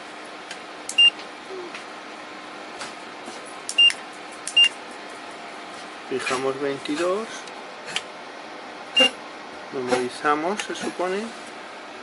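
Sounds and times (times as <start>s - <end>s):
fan heater humming and hissing: 0.0s - 12.0s
short high beeps: 9.0s - 9.2s.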